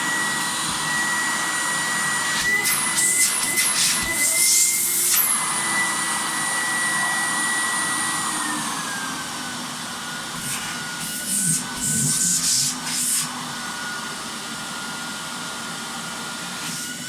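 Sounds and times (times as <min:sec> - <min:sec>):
vacuum cleaner motor whine: 0:00.0 - 0:17.0.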